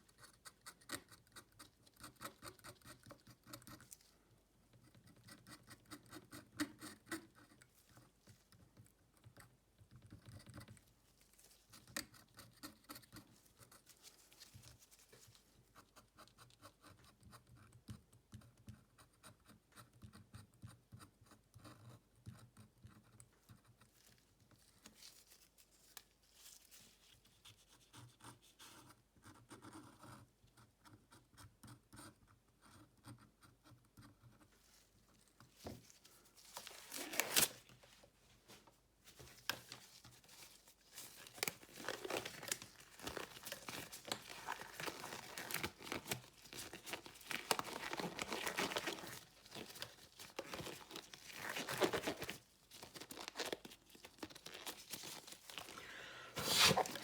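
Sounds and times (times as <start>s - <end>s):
faint scratching: 53.3s - 57.0s.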